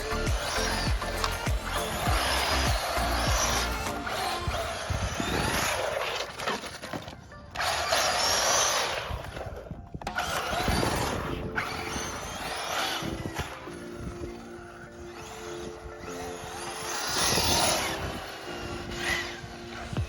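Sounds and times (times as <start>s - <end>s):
background music: 0.0s - 5.7s, 9.8s - 20.0s
electric motor whine: 0.0s - 20.0s
tyre noise on pavement: 0.3s - 7.3s.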